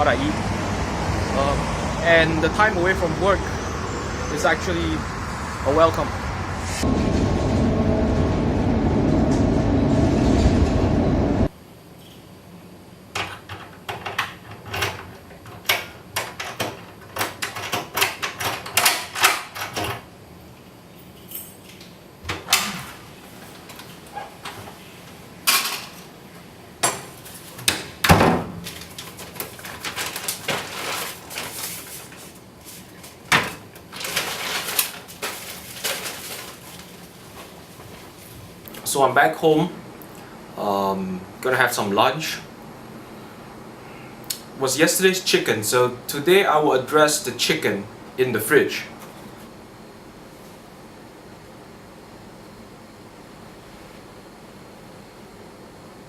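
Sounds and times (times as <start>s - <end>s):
road traffic noise: 0.0s - 11.5s.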